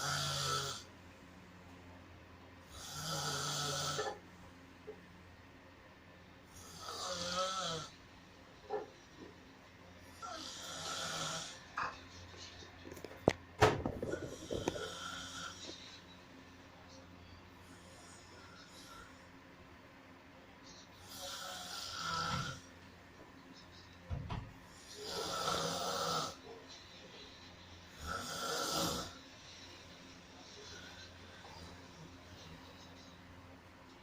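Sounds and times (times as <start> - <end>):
person snoring loudly: 0.0 - 0.9, 2.7 - 4.2, 6.6 - 8.0, 10.2 - 11.6, 14.1 - 15.7, 21.0 - 22.7, 24.8 - 26.4, 28.0 - 29.2.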